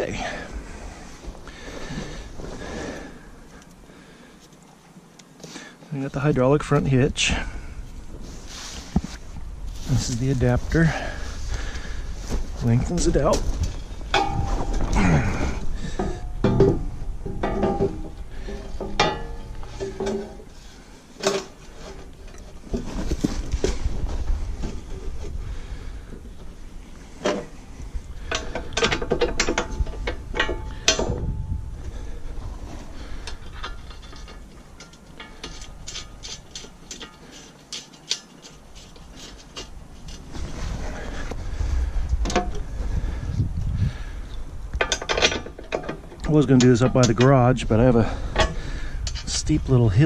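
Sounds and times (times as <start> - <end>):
hand tools and steel parts clanking: 0.0 - 43.2, 44.7 - 50.0.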